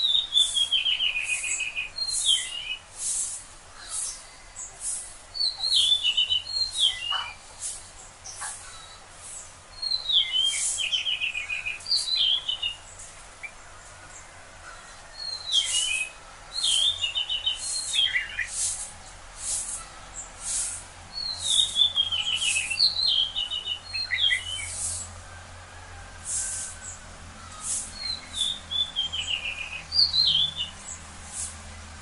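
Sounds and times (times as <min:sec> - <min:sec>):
high bird chirps: 0:00.0 - 0:02.9, 0:05.4 - 0:12.8, 0:15.1 - 0:18.8, 0:19.8 - 0:25.1, 0:27.4 - 0:31.0.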